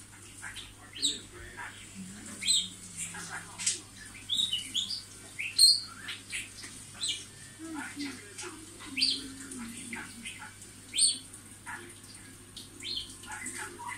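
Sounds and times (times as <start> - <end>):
budgerigar warbling: 0.4 - 8.2, 8.8 - 12.0.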